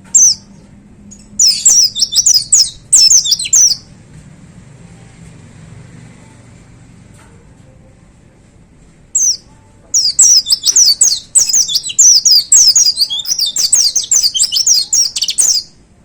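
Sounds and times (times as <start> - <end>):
white-eye singing: 0.1 - 3.9, 9.1 - 16.0.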